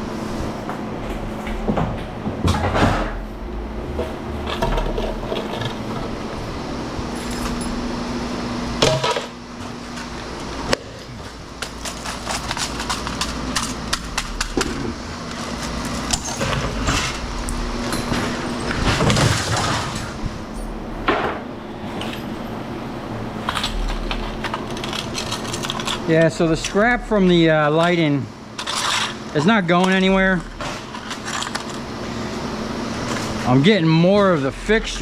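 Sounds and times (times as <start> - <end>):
low hum: 0.0 - 35.0
metal and glass parts clattering: 7.2 - 7.8, 8.8 - 20.8, 23.4 - 27.0, 27.6 - 31.8.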